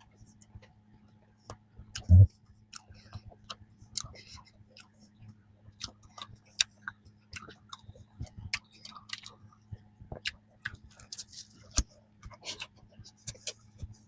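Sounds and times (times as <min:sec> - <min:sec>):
person chewing crisp pastry: 0:00.0 - 0:14.0.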